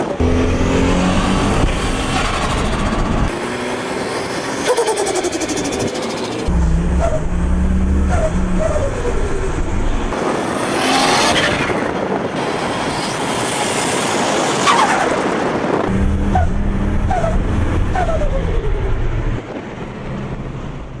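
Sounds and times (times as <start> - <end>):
car engine revving hard: 0.2 - 4.5.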